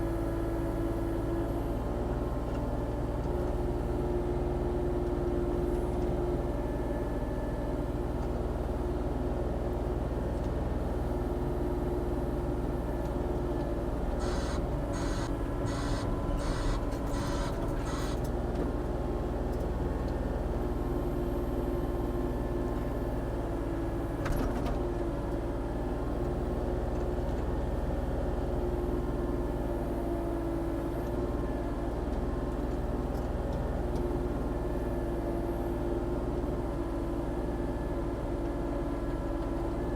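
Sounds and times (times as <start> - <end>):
excavator diesel engine running: 0.0 - 39.9
short high-pitched pulses: 14.2 - 18.2.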